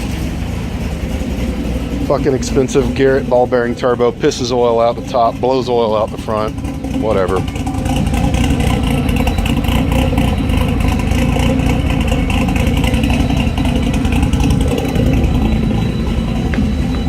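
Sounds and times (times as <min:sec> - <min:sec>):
engine idling with loud cam: 0:00.0 - 0:17.0.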